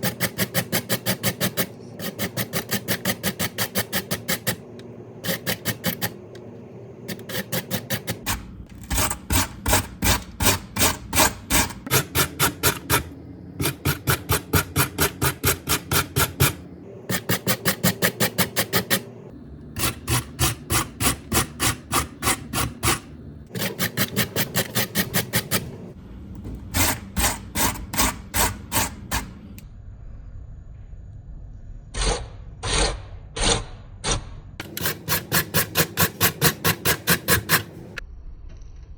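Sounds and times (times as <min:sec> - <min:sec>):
potato grated on a grater: 0:00.0 - 0:04.6, 0:05.2 - 0:06.2, 0:07.1 - 0:19.1, 0:19.8 - 0:25.8, 0:26.7 - 0:29.3, 0:34.6 - 0:38.0.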